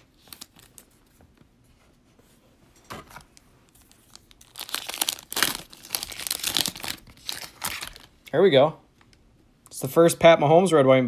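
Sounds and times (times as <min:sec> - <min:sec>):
cellophane wrapper crinkling: 0:00.1 - 0:01.0, 0:03.7 - 0:08.3.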